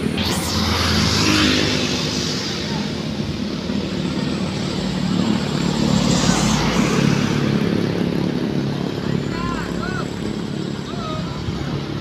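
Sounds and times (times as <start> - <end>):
heavy vehicle passing: 0.0 - 8.1.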